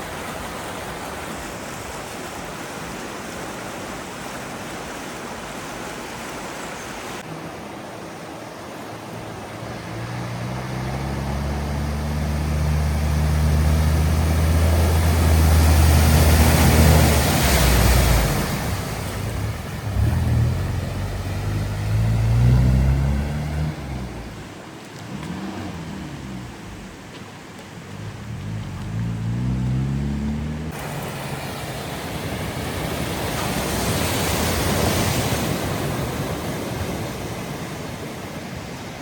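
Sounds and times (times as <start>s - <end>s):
water spray rushing hiss: 8.7s - 39.0s
vehicle engine: 9.4s - 37.6s.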